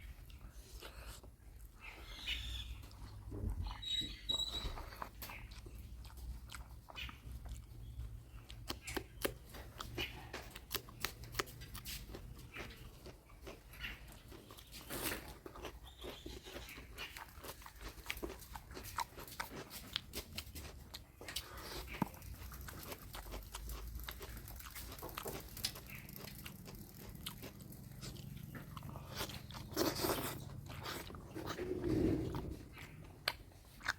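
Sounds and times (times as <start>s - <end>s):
wet mouth smacks and chewing: 4.8s - 31.6s.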